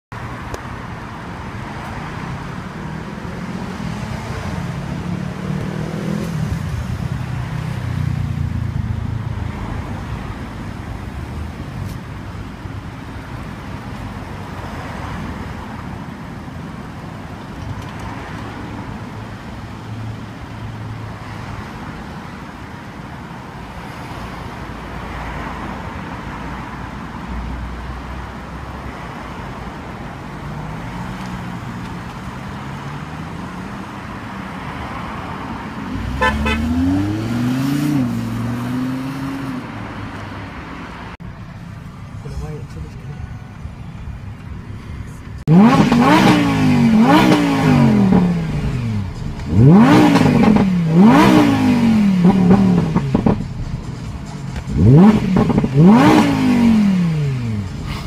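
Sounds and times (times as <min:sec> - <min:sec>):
street traffic noise: 0:00.1 - 0:58.0
car engine running: 0:41.2 - 0:58.0.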